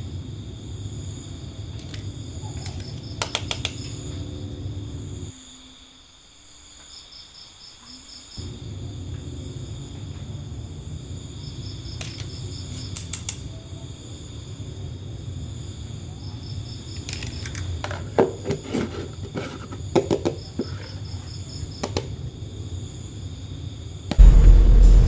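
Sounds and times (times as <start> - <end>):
insects chirping: 0.0 - 24.7
low hum: 4.0 - 5.3, 8.4 - 16.2, 24.1 - 25.0
sharp clicks: 12.0 - 13.5.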